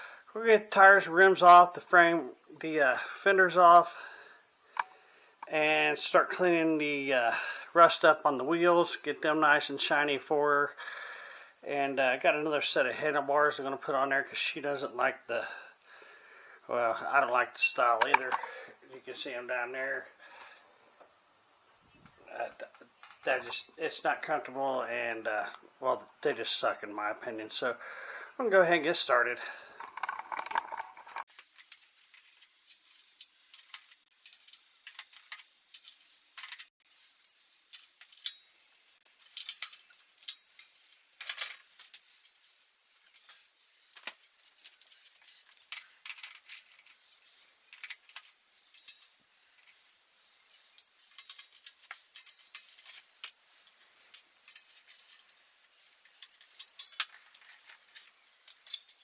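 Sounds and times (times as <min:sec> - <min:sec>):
hand tools clinking on metal: 0:39.2 - 0:48.1, 0:48.7 - 0:49.2, 0:50.1 - 0:55.4, 0:56.0 - 0:59.0.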